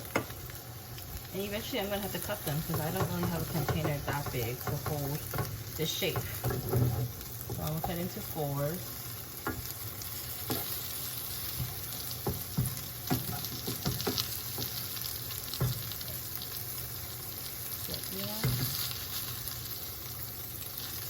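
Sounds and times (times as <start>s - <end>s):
pancake sizzling in hot oil: 0.0s - 21.0s
spatula knocking and scraping pan: 2.1s - 8.3s, 9.4s - 16.0s, 18.4s - 18.9s.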